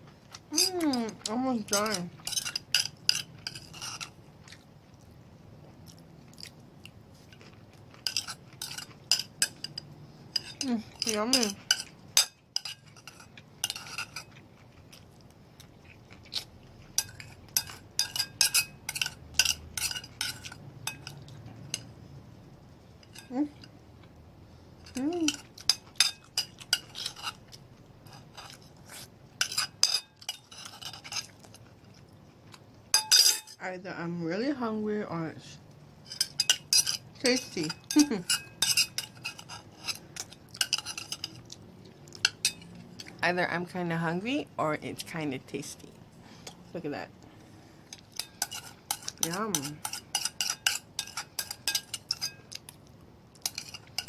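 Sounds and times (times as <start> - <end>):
cutlery clinking on a plate: 8.0 - 9.8, 17.0 - 21.9, 29.4 - 31.4, 33.0 - 33.6, 36.1 - 41.4, 48.0 - 52.6, 53.4 - 54.0.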